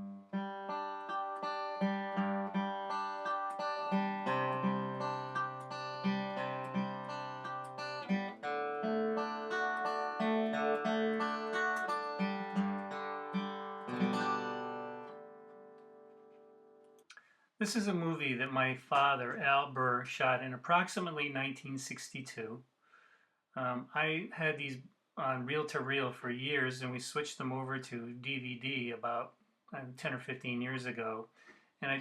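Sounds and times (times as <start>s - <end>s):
plucked string instrument music: 0.0s - 17.0s.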